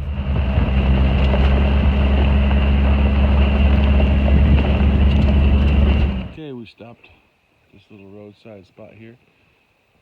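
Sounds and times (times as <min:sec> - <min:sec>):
vehicle engine and road rumble: 0:00.0 - 0:06.4.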